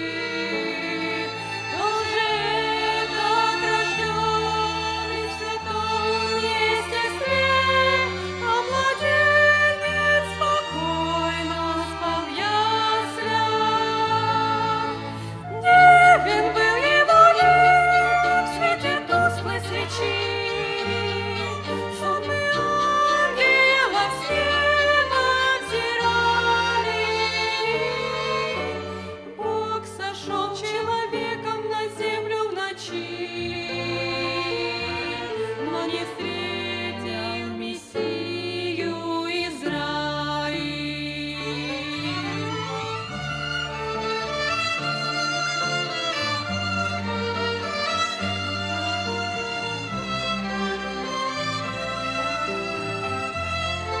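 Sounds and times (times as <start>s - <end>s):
women singing: 0.0s - 43.0s
violin ensemble: 0.0s - 54.0s.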